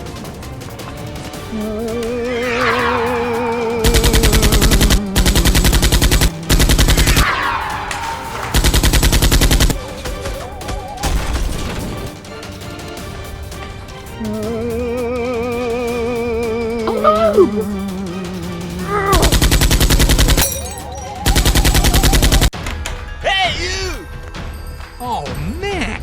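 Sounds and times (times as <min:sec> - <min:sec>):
music: 0:00.0 - 0:26.0
falling whistle-like swoops: 0:02.2 - 0:03.8, 0:07.0 - 0:08.6
automatic gunfire: 0:03.9 - 0:07.2, 0:08.2 - 0:09.9, 0:19.3 - 0:20.4.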